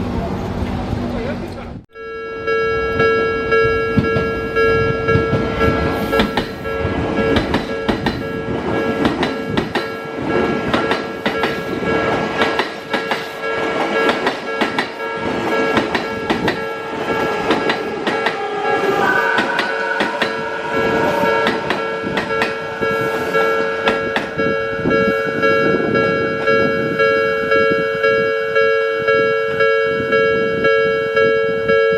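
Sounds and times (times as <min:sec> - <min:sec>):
level-crossing warning bell: 0:01.9 - 0:31.9
train wheels clacking: 0:03.9 - 0:25.8
rising whine: 0:15.0 - 0:31.6.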